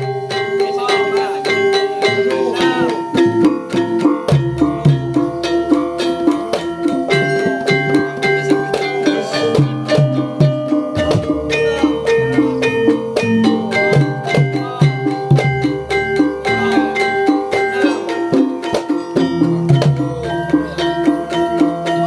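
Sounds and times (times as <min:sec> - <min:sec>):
percussion beat: 0:00.0 - 0:22.0
plucked string melody: 0:00.0 - 0:22.0.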